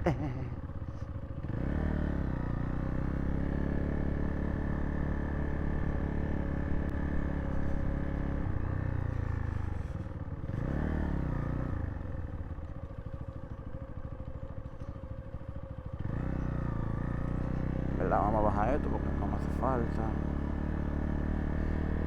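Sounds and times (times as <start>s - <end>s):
motorcycle engine running: 0.0s - 22.0s.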